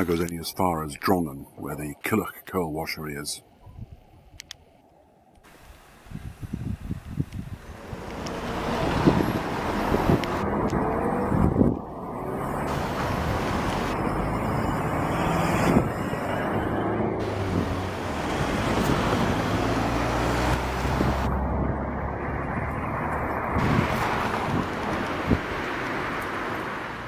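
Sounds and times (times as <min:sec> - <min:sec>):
motor vehicle passing: 0:07.2 - 0:27.0.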